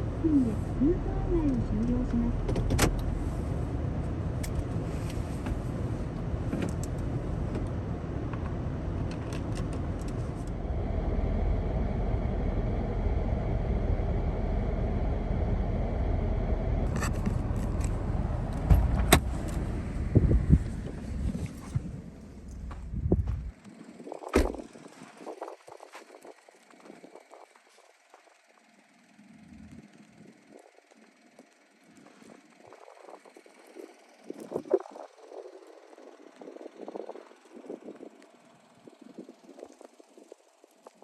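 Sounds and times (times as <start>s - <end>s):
road and engine rumble: 0.0s - 41.0s
loud thumps: 18.6s - 19.6s.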